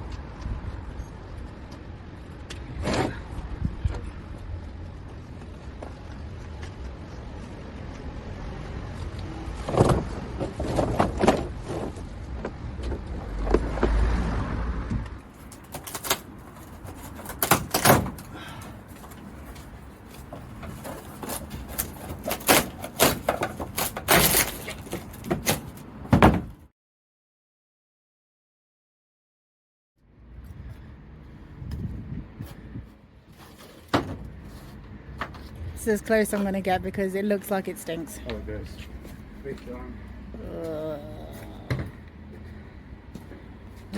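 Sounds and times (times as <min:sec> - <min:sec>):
plywood knocking and cracking: 0:15.4 - 0:26.6.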